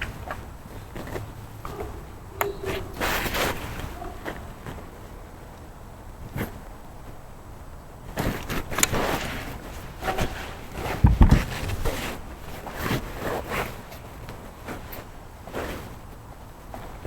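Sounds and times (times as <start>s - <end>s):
heavy low thump: 11.0s - 12.0s.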